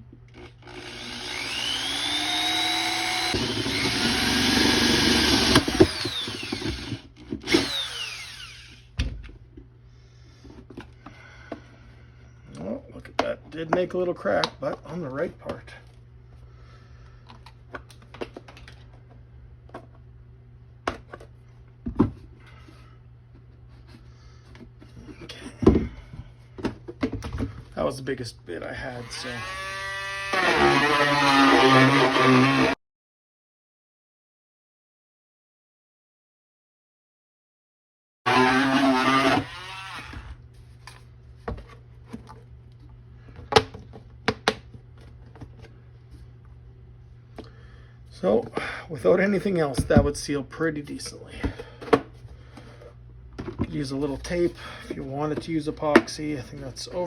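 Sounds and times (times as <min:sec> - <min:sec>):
power tool motor spinning down: 0:00.7 - 0:08.8, 0:29.0 - 0:32.8, 0:38.3 - 0:40.4.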